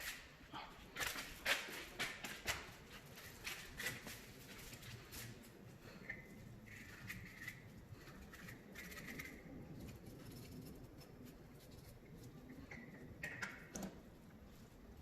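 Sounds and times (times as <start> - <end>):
scratchy rubbing: 6.6 - 12.5.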